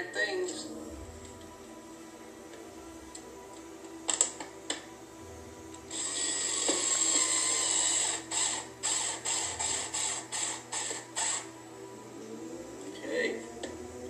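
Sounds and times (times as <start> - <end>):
cordless drill whining: 5.9 - 11.5.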